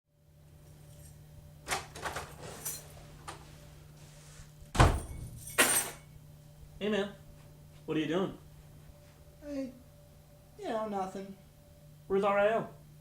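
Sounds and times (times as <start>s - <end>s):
door thumping shut: 4.7s - 5.4s.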